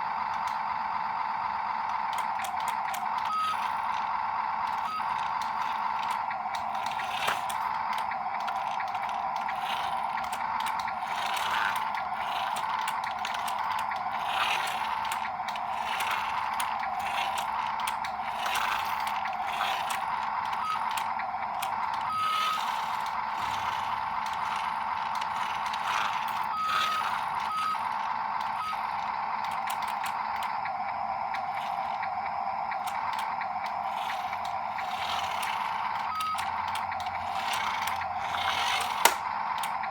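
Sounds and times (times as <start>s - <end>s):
small electric motors whining: 0.0s - 39.9s
small clicks and rattles: 4.7s - 28.6s.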